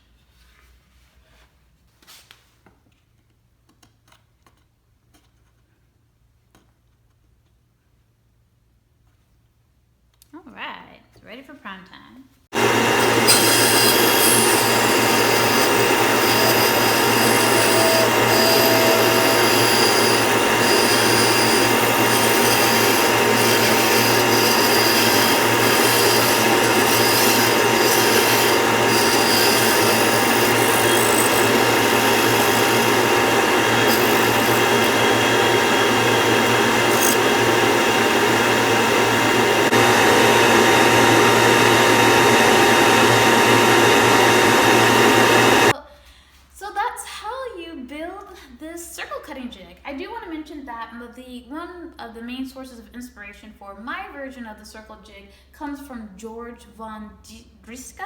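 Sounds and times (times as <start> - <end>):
bandsaw cutting wood: 12.5 - 45.7.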